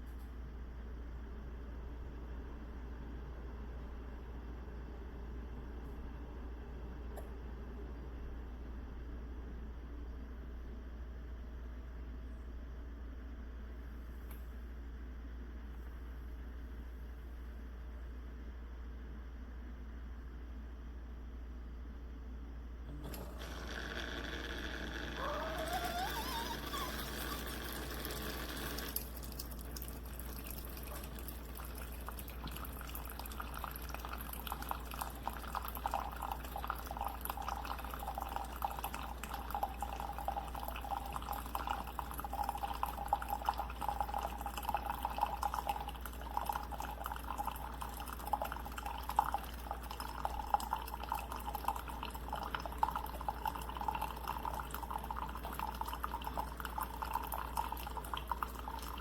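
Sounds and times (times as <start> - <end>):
coffee maker dripping and spluttering: 22.9 - 59.0.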